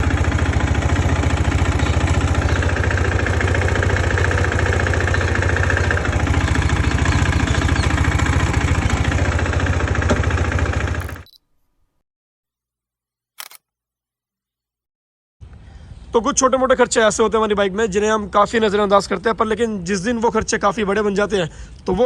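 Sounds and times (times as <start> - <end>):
motorcycle engine idling: 0.0 - 11.4.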